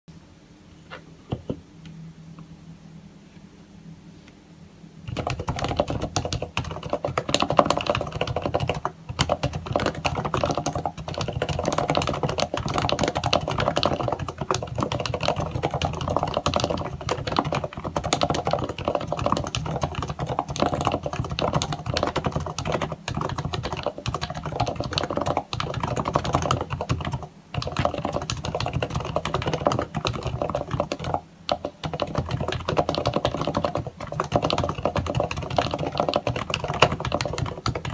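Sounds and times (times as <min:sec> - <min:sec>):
fast typing on keyboard: 0:05.1 - 0:37.9.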